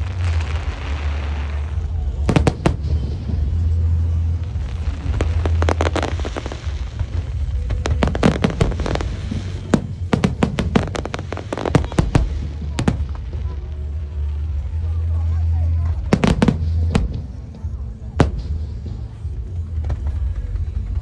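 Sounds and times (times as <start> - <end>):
sharp rapid fireworks bangs: 0.0 - 13.7, 16.0 - 20.3
crackling hiss: 0.0 - 21.0
fireworks shell bursts rumbling: 2.2 - 13.9, 15.9 - 21.0.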